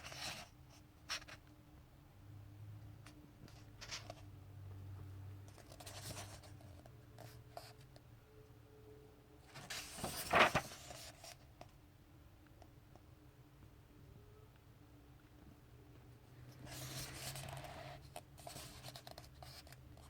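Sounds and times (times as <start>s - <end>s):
book pages turning: 9.5s - 11.4s
paper rustling: 9.5s - 11.4s.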